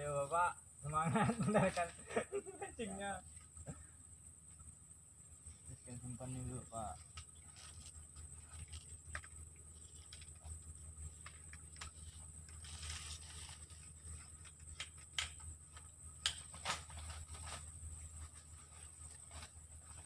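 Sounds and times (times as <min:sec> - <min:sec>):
high insect drone: 0:00.0 - 0:20.0.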